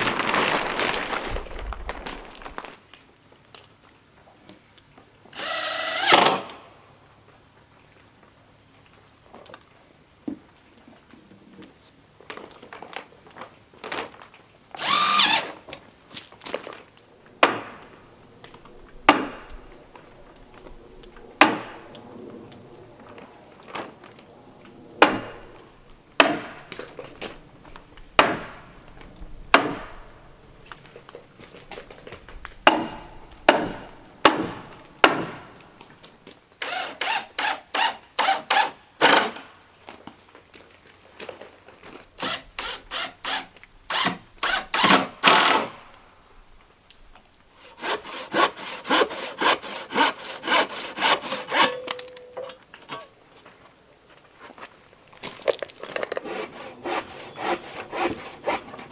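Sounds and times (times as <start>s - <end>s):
hand saw cutting wood: 14.8s - 15.6s, 17.4s - 19.6s, 21.4s - 21.8s, 26.2s - 27.3s, 32.6s - 36.0s, 36.6s - 39.4s, 42.2s - 45.8s, 47.6s - 52.0s, 56.1s - 58.9s.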